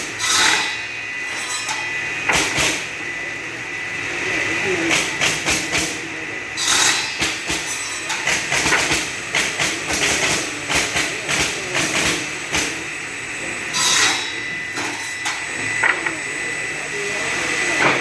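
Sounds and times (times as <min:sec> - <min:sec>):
wood-cutting machine clattering: 0:06.6 - 0:12.9.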